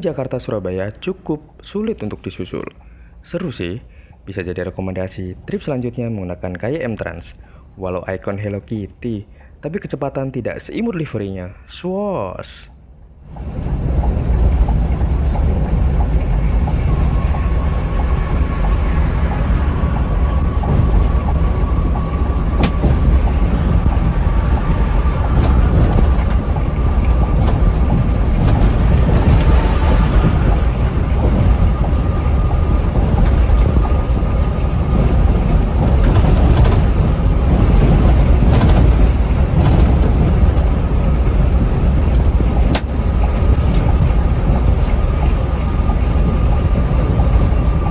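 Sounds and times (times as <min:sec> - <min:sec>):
coach engine and road rumble: 0:12.3 - 0:47.9.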